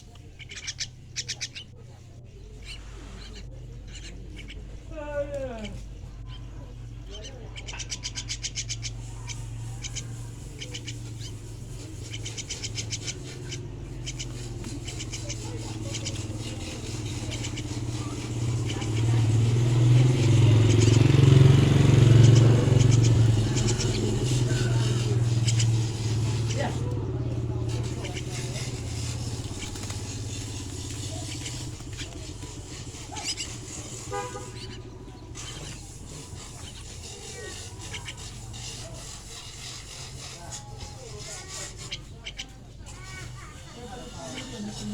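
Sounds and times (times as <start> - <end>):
chicks chirping raspily: 0.0 - 44.9
vehicle engine passing: 0.1 - 44.9
horn toot: 34.0 - 34.9.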